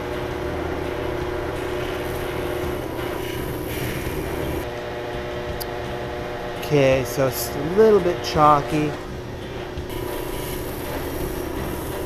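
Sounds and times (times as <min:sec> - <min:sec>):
lathe motor hum: 0:00.0 - 0:12.0
grinding hiss on glass: 0:01.6 - 0:04.6, 0:09.9 - 0:12.0.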